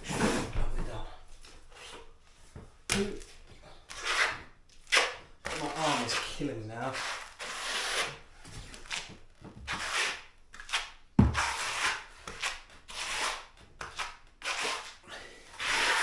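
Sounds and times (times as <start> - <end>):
trowel scraping on a wall: 3.9 - 8.2, 8.8 - 16.0.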